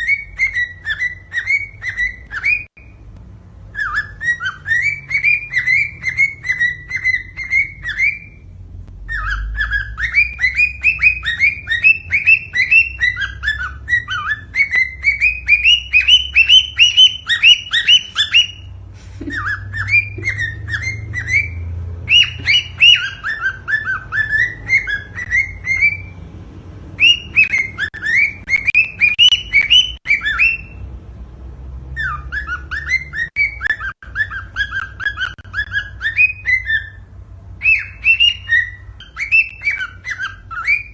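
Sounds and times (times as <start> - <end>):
cockatiel whistled chirps: 0.0 - 3.0, 3.7 - 26.2, 27.0 - 30.9, 32.0 - 40.9.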